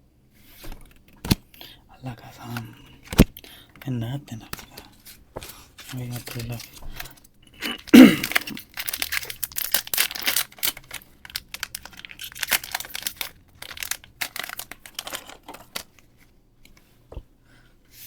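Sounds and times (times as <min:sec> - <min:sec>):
foil wrapper crinkling: 0:04.7 - 0:16.1.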